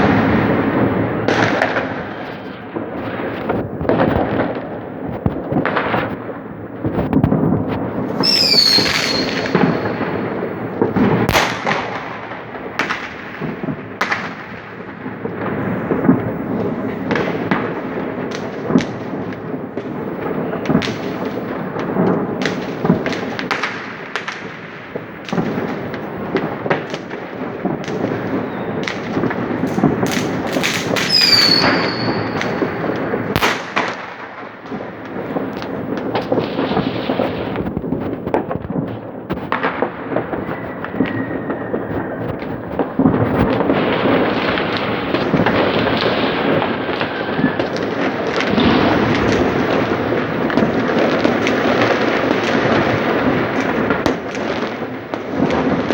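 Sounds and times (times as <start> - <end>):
firecrackers crackling: 0.0 - 55.9
firework bangs: 0.0 - 55.9
high falling whistle: 8.2 - 9.9, 31.1 - 32.4.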